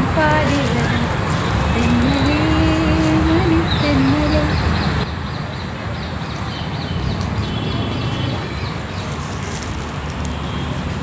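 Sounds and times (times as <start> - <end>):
steady low rumble: 0.0 - 5.1
small birds chirping: 0.0 - 10.7.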